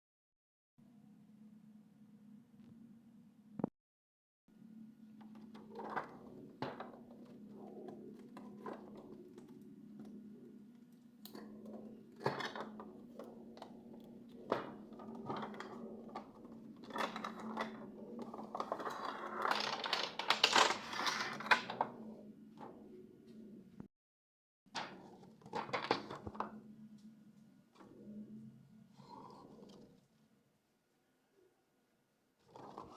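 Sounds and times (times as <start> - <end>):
plastic parts clicking: 18.4 - 21.9.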